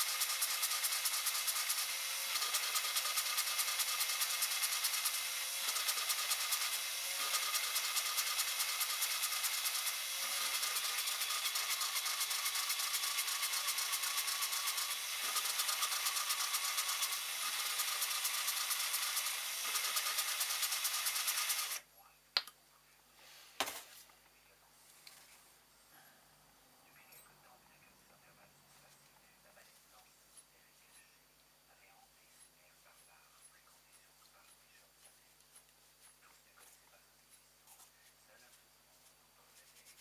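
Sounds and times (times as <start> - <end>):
small power tool buzzing: 0.0 - 21.8.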